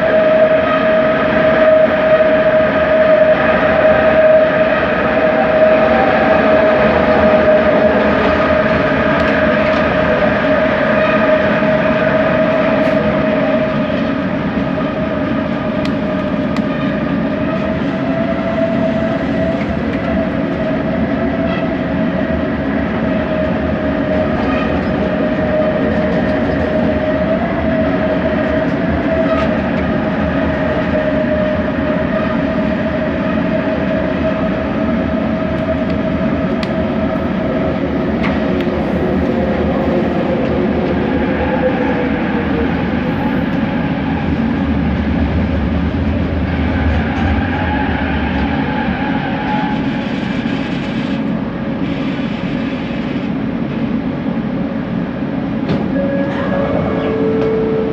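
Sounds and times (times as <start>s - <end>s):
train wheels rumbling: 0.0s - 57.9s
train motor whine: 55.7s - 57.9s.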